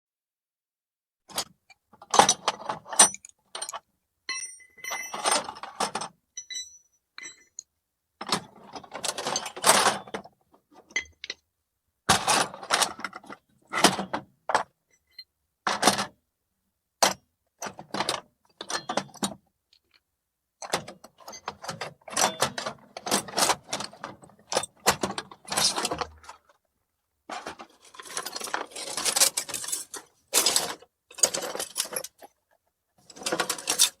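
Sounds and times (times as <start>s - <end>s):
metal tools clattering: 2.6s - 7.6s, 27.3s - 32.3s, 33.1s - 34.0s.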